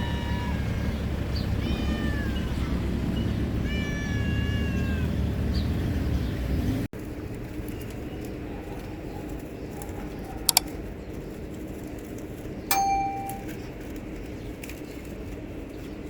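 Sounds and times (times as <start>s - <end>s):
cat meowing: 0.0s - 0.9s, 1.5s - 2.8s, 3.6s - 5.2s.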